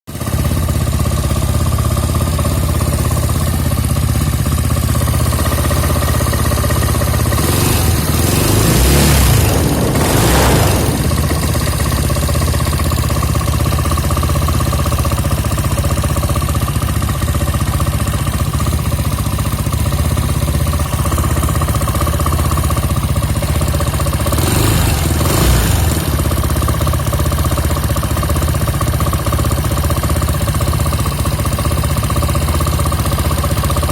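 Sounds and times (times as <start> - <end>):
scooter engine running: 0.1 - 33.9
loud rushing swell: 6.2 - 12.8.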